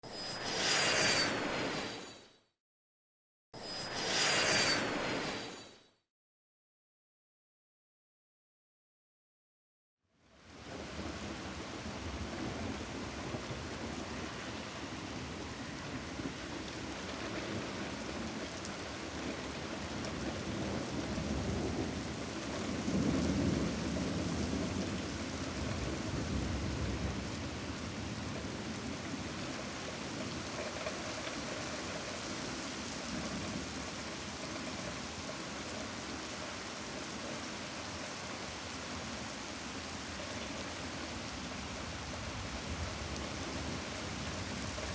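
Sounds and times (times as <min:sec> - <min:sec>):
heavy rain falling: 0:10.4 - 0:44.9
thunder rumbling: 0:10.8 - 0:29.6.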